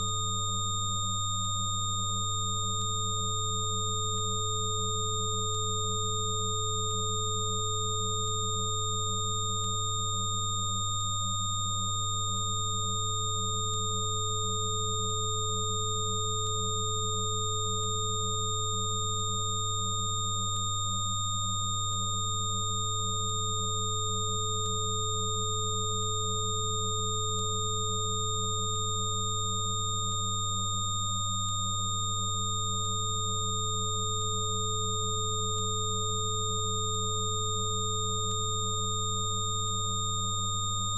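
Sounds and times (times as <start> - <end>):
middle sine tone: 0.0 - 40.9
wavering sine tone: 0.0 - 40.9.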